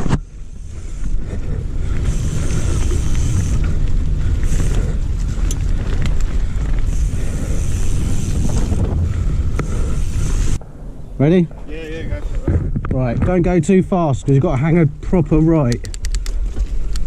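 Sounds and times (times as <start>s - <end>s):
bike clicks and rattles: 0.0s - 10.6s, 15.5s - 17.0s
bike tyres rolling on dirt: 0.0s - 17.0s
wind buffeting microphone: 0.0s - 17.0s.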